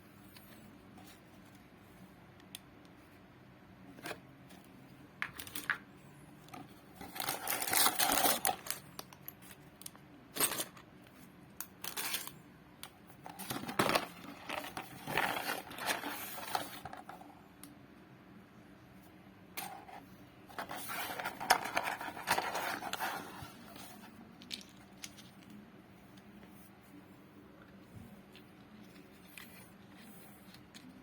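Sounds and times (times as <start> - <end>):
packaging rustling and scraping: 6.5 - 9.6, 11.8 - 12.3, 13.2 - 17.3, 19.6 - 25.6.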